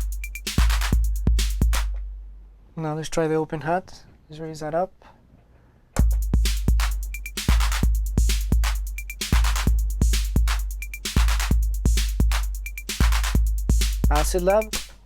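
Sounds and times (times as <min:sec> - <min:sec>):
ticking hi-hats: 0:00.0 - 0:02.3, 0:06.0 - 0:15.0
deep bass drum hits: 0:06.0 - 0:08.8.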